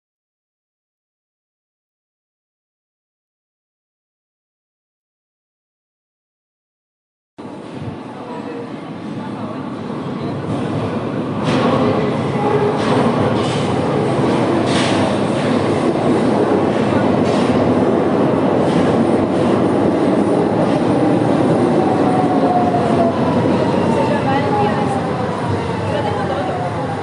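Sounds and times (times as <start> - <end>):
train rumbling on rails: 7.4 - 27.0
train wheels clanking: 11.4 - 17.9, 18.5 - 19.7.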